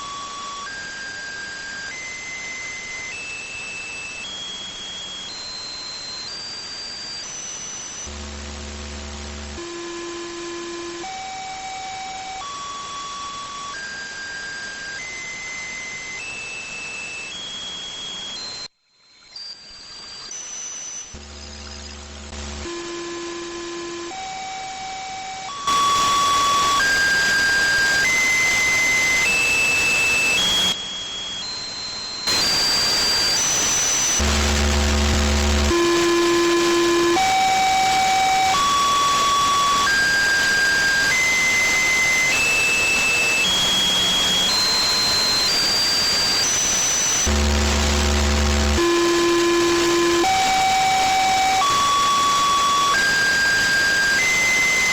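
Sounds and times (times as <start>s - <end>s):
radio hiss: 25.7s - 30.8s, 32.3s - 54.9s.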